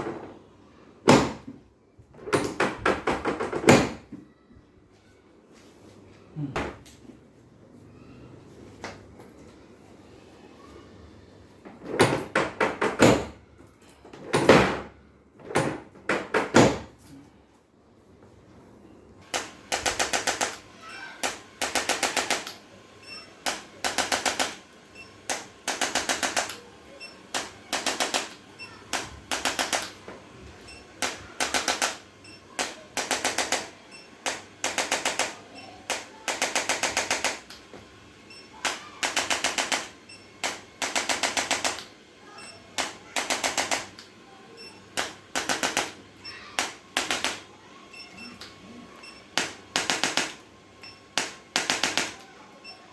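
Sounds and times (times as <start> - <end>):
rapid mechanical tapping: 19.2 - 20.6, 21.2 - 22.6, 23.4 - 26.6, 27.3 - 30.0, 38.6 - 41.9, 42.7 - 44.1, 44.9 - 46.0, 46.6 - 47.4, 49.4 - 50.4, 51.2 - 52.2.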